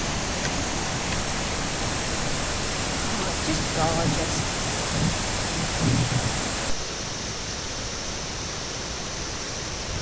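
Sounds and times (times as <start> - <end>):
waterfall rushing: 0.0 - 6.8.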